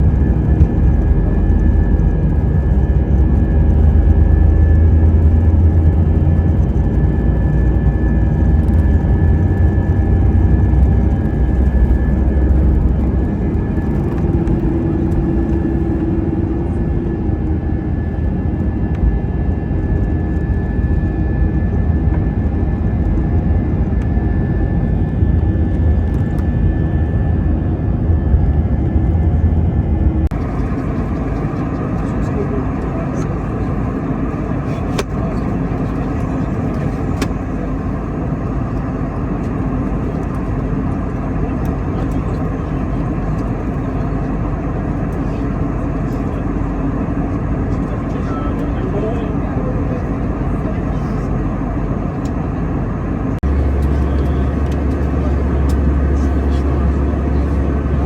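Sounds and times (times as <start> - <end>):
jet engine high whine: 0.0 - 58.0
jet engines rumbling: 0.0 - 58.0.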